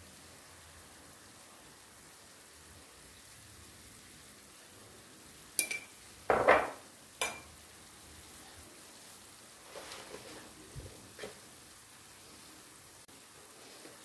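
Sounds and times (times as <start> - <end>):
faint sizzle: 0.0 - 14.0
metal spoon clinking on pan: 5.6 - 6.0, 7.2 - 7.5.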